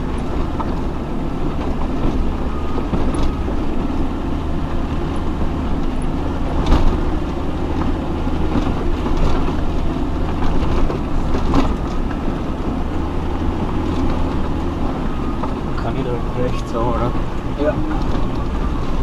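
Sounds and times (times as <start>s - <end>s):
off-road vehicle engine at low revs: 0.0s - 19.0s
vehicle jolting knocks: 5.0s - 15.8s.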